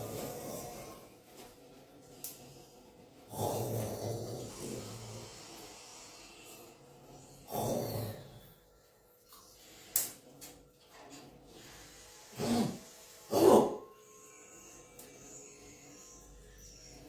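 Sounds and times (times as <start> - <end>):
woman snoring: 7.4 - 8.4.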